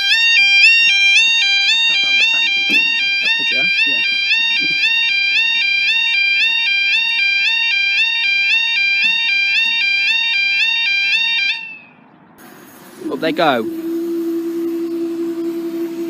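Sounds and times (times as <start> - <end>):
level crossing two-tone alarm: 0.0 - 12.0.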